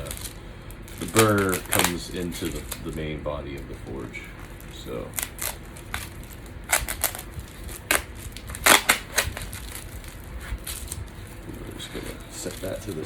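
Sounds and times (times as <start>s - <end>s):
crinkling packaging rustles: 0.0s - 13.0s.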